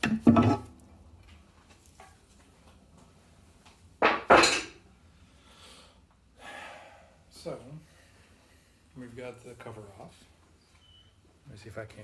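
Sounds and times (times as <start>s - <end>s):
heavy metal cover clanking: 0.0s - 0.7s.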